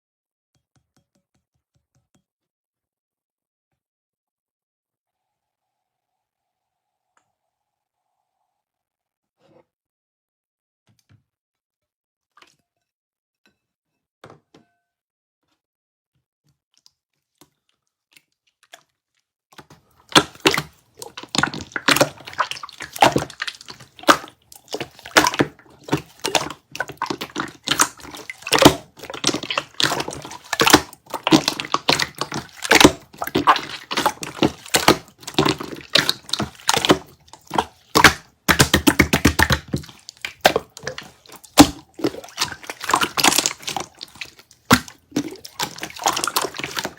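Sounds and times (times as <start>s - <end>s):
slime clicking and popping: 20.1s - 46.9s.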